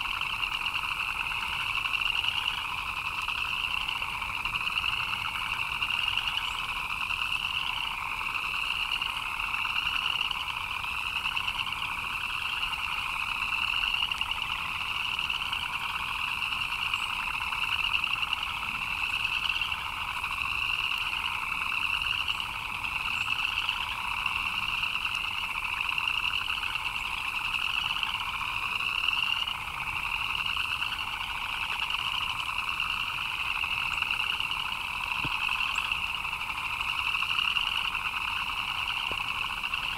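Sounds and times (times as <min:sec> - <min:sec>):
frogs chirping chorus: 0:00.0 - 0:39.9.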